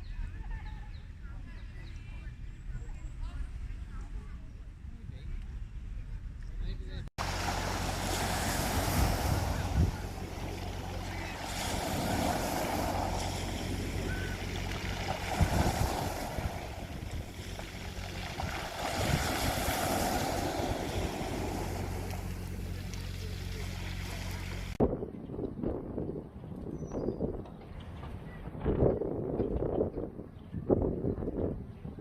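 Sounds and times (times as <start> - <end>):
steady low hum: 1.2 - 24.8
waves washing on shore: 7.2 - 24.8.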